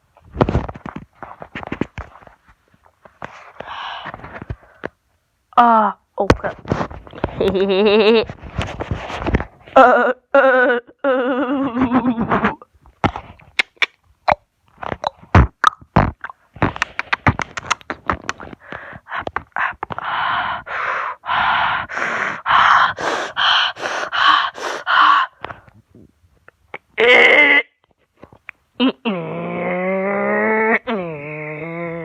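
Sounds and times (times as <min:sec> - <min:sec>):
mouth clicks and pops: 0:12.9 - 0:20.1.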